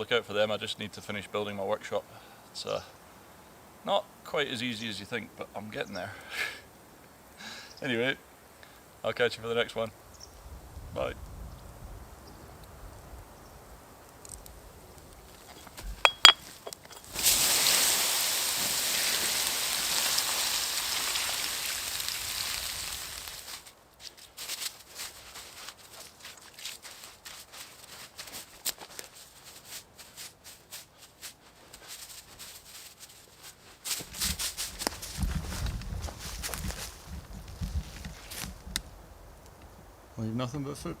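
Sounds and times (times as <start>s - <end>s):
faint crackles and ticks: 14.0s - 15.7s, 21.0s - 39.8s
campfire hissing as doused: 17.0s - 23.8s.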